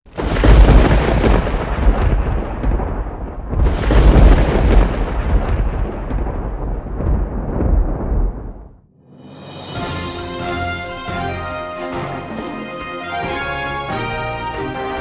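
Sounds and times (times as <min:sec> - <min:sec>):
deep loud rumbling: 0:00.0 - 0:08.9.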